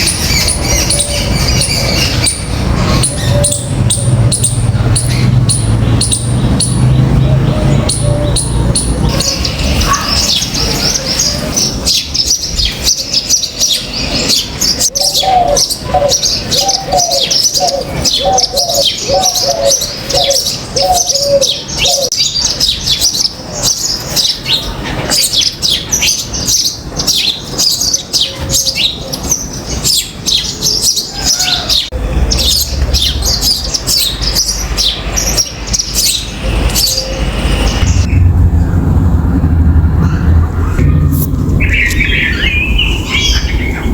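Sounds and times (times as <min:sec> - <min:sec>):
small birds chirping: 0:00.0 - 0:38.8, 0:39.9 - 0:43.9
low rumble: 0:36.3 - 0:43.9.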